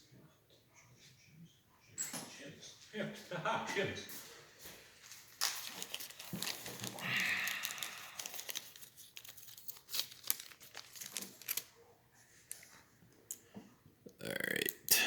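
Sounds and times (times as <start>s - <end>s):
thin material crinkling: 5.0s - 12.8s.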